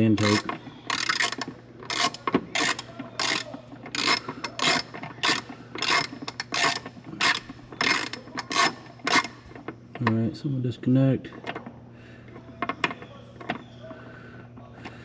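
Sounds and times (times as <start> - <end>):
socket ratchet clicking: 0.0 - 9.4.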